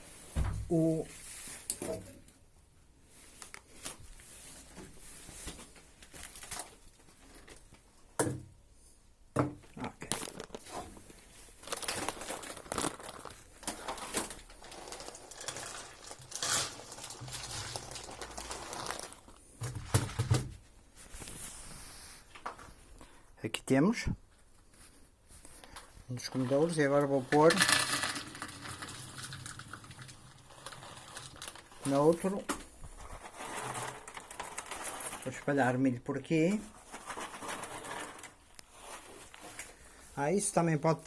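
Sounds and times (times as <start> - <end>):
plastic crinkling and rustling: 3.0 - 8.0, 9.8 - 23.2, 24.3 - 41.0
plastic jugs knocking: 19.6 - 20.6.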